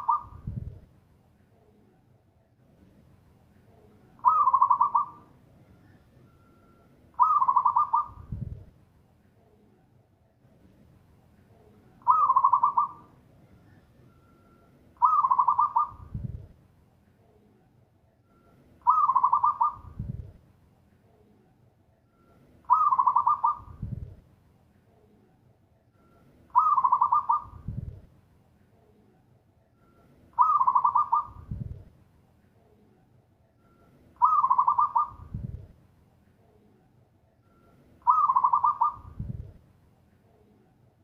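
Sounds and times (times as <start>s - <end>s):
dove cooing song: 0.0s - 0.7s, 4.2s - 5.4s, 6.5s - 8.5s, 12.0s - 13.2s, 15.0s - 16.4s, 18.8s - 20.2s, 22.6s - 24.1s, 26.5s - 28.0s, 30.4s - 31.8s, 34.2s - 35.6s, 38.0s - 39.5s.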